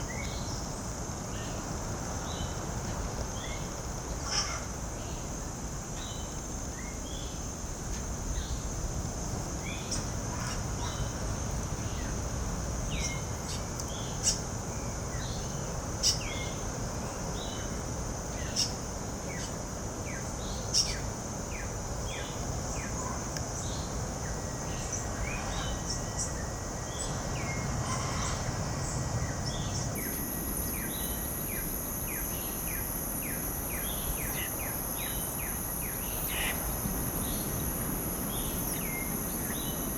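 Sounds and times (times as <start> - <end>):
high insect drone: 0.0 - 39.9
small birds chirping: 29.6 - 39.9
higher insect buzz: 30.0 - 39.9
sharp loud bird chips: 30.0 - 39.9.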